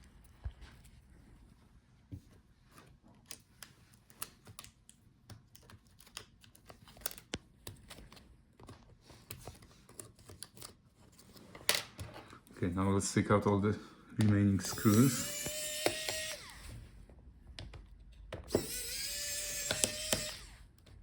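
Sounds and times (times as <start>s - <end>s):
laptop cables clicking and tapping: 3.1s - 10.8s, 17.4s - 21.0s.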